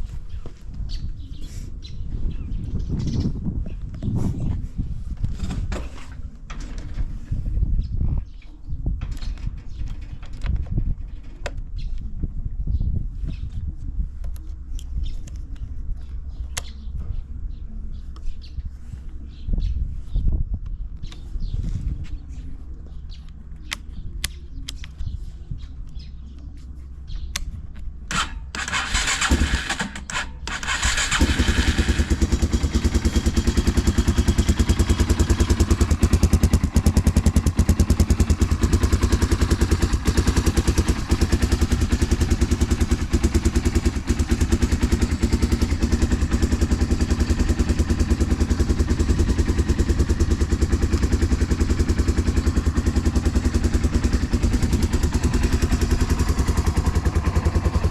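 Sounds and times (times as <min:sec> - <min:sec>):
motorcycle engine cranking: 0:28.1 - 0:57.9
motorcycle engine idling: 0:28.1 - 0:57.9.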